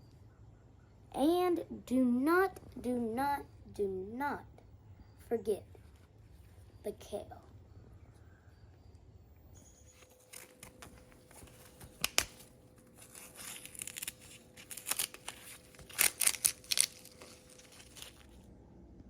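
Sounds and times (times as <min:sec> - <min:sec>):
crinkly rustling and crackling: 0:09.9 - 0:18.5.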